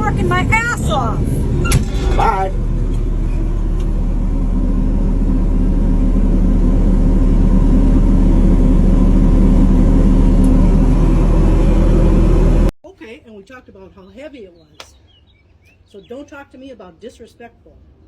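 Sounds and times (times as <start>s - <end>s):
large engine rumbling: 0.0s - 12.7s.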